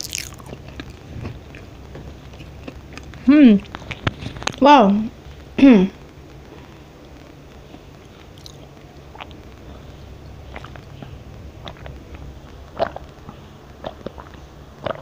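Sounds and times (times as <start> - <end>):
person chewing crisp cookie: 0.0 - 4.6, 7.7 - 15.0.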